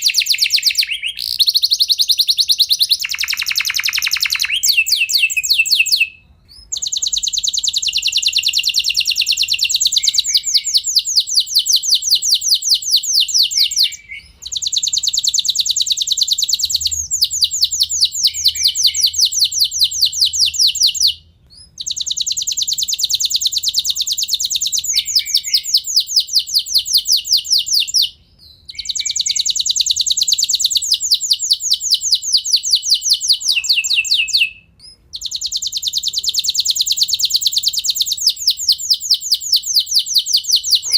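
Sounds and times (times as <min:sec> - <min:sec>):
canary singing rolling trills: 0:00.0 - 0:40.9.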